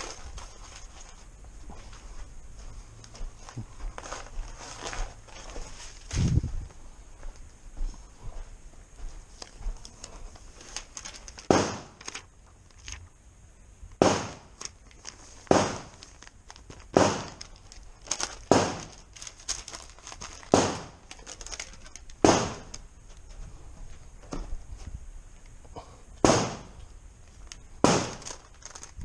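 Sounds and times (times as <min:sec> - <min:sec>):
rifle shots: 0:11.5 - 0:12.0, 0:14.0 - 0:14.6, 0:15.5 - 0:16.0, 0:16.9 - 0:17.4, 0:18.5 - 0:18.9, 0:20.5 - 0:21.0, 0:22.2 - 0:22.7, 0:26.2 - 0:26.7, 0:27.8 - 0:28.2.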